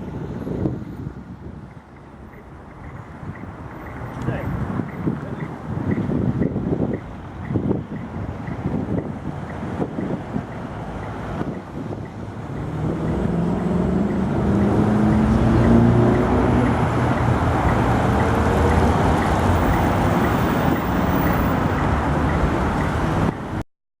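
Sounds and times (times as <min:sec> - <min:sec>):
tram motor whine and rumble: 0:00.0 - 0:23.4.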